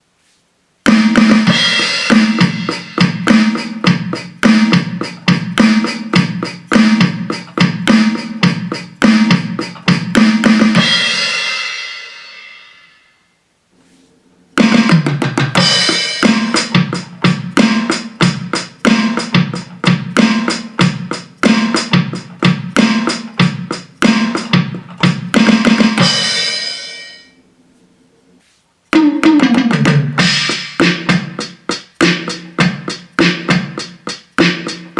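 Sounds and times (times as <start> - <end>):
electronic drum beat: 0.8 - 12.3, 14.6 - 27.3, 28.9 - 34.9
cymbal ringing out: 26.0 - 27.4.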